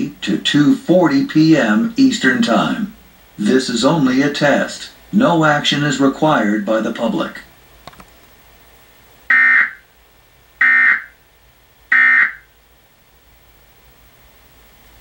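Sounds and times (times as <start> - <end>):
buzzy digital data tones: 9.3 - 9.8, 10.6 - 11.2, 11.9 - 12.5.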